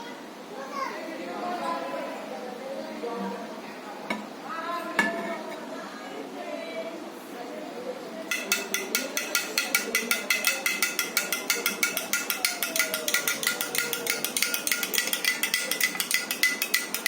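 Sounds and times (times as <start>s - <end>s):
spoon clinking in glass jar: 8.3s - 17.0s.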